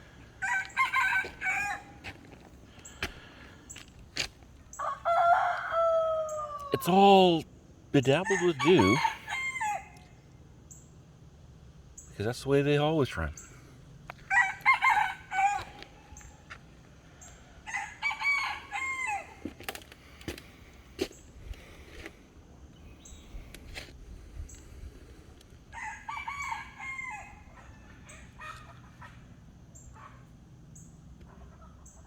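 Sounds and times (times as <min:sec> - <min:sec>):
roosters crowing: 0:00.0 - 0:03.8, 0:04.7 - 0:07.4, 0:08.0 - 0:10.3, 0:14.1 - 0:20.2, 0:25.6 - 0:30.2.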